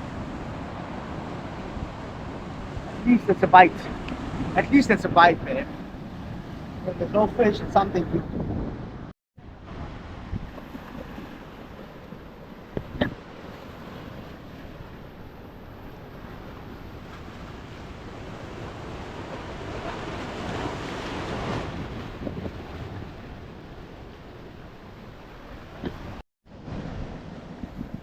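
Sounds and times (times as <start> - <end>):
sea surf washing on shore: 0.0 - 28.0
wave breaking: 0.0 - 28.0
wind buffeting microphone: 0.0 - 28.0.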